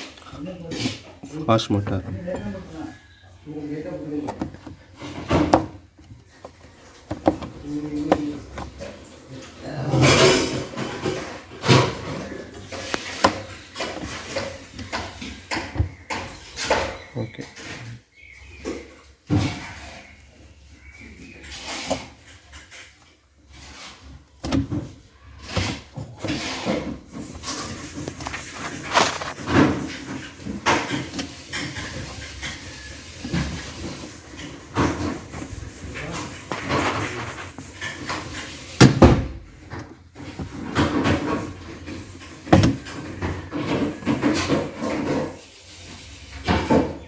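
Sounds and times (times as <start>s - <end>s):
hard objects knocking and clattering: 3.9s - 17.8s, 21.9s - 45.6s.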